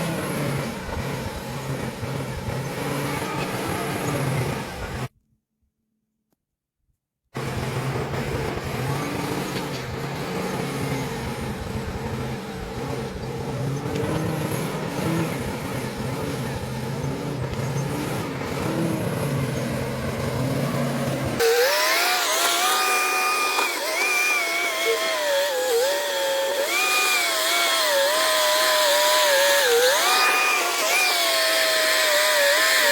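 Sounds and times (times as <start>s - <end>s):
vehicle engine humming: 0.0s - 5.1s, 7.4s - 25.0s.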